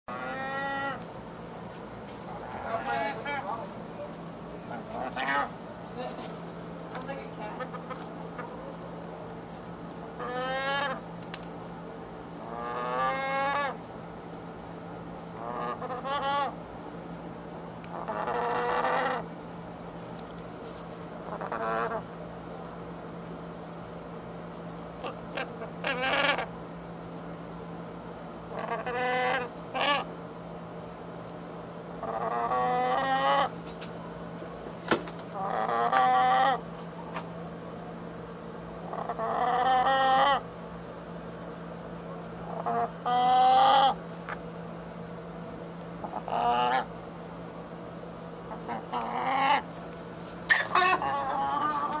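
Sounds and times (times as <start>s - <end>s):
chicken calling: 0.1s - 1.0s, 4.7s - 5.6s, 7.5s - 8.6s, 10.2s - 11.1s, 12.4s - 13.8s, 15.3s - 16.6s, 17.9s - 19.3s, 21.2s - 22.1s, 25.0s - 26.6s, 28.5s - 30.1s, 32.0s - 33.6s, 35.3s - 36.7s, 38.8s - 40.5s, 42.4s - 44.0s, 46.0s - 47.0s, 48.4s - 49.8s, 50.5s - 52.0s.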